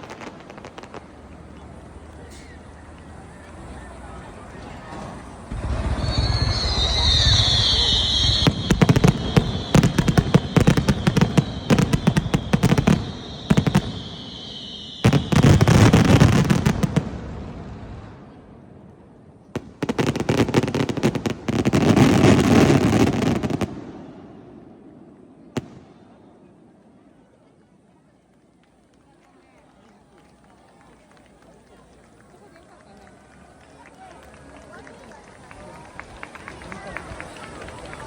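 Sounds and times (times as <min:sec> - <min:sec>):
fireworks crackling bangs: 0:00.0 - 0:03.8, 0:04.5 - 0:27.0
falling firework whistle: 0:04.8 - 0:18.3, 0:19.6 - 0:24.5.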